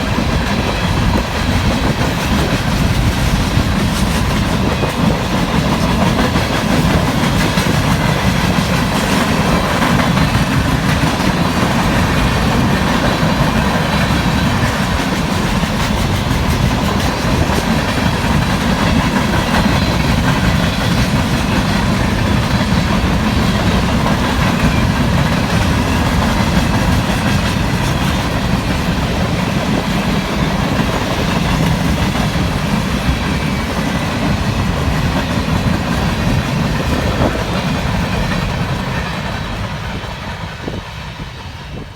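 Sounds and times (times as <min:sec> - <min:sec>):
freight train rolling past: 0:00.0 - 0:41.9.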